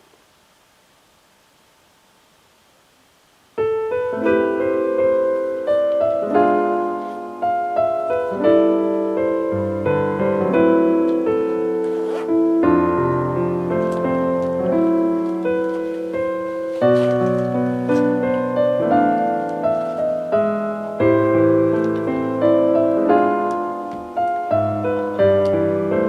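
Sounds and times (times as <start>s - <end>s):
gentle piano music: 3.5s - 26.0s.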